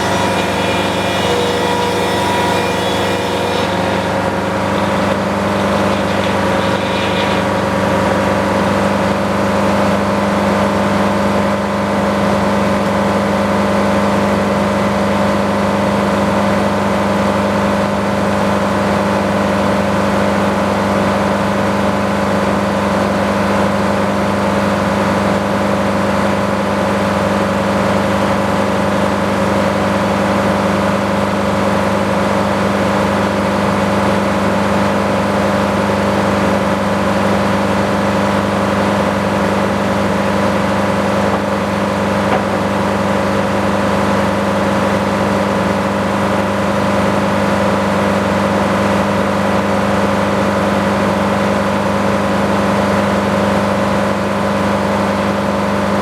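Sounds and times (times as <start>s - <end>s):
sawmill humming: 0.0s - 13.0s, 28.8s - 50.4s.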